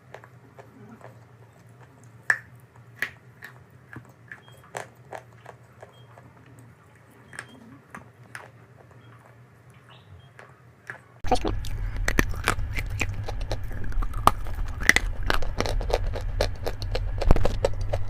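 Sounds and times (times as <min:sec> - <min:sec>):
person chewing crunchy chalk: 0:00.0 - 0:09.5, 0:10.9 - 0:18.0.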